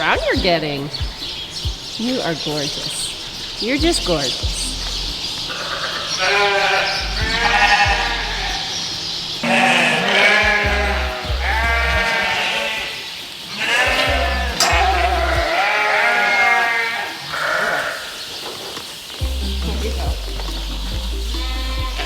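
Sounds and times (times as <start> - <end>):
sheep bleating: 5.5 - 18.3, 21.3 - 22.0.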